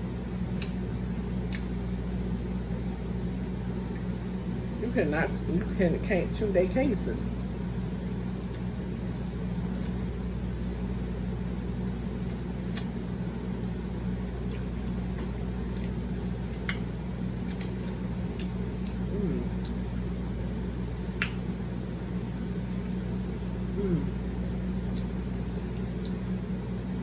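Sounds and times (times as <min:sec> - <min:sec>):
fan humming: 0:00.0 - 0:27.0
person chewing: 0:01.4 - 0:02.4, 0:12.1 - 0:13.4, 0:14.2 - 0:26.5.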